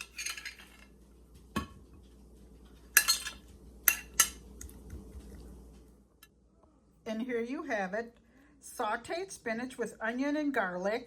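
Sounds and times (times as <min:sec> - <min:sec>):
cutlery clinking against a dish: 0:03.0 - 0:04.4.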